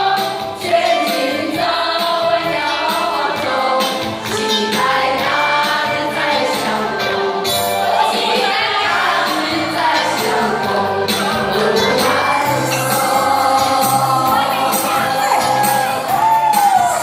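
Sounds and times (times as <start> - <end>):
choir singing long notes: 4.5 - 17.0.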